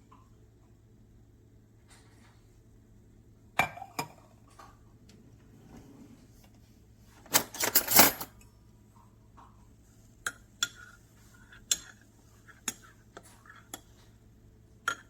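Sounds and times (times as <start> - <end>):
kitchenware clattering: 7.2 - 8.4.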